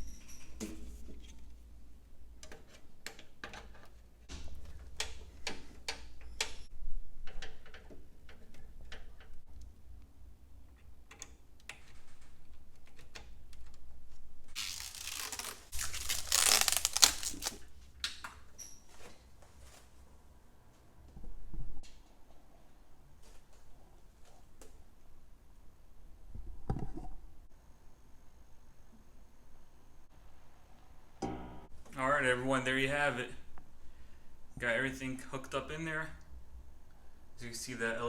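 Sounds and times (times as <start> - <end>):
loud rustling: 14.6 - 17.6.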